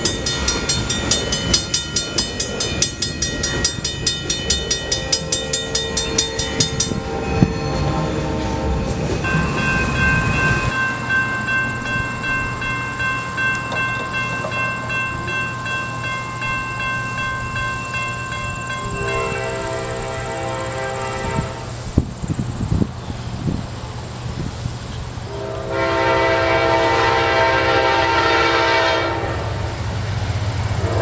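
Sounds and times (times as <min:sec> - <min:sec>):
high ringing tone: 0:00.0 - 0:08.2, 0:09.2 - 0:21.3
crossing bell ringing: 0:00.0 - 0:21.7
train rumble: 0:00.0 - 0:31.0.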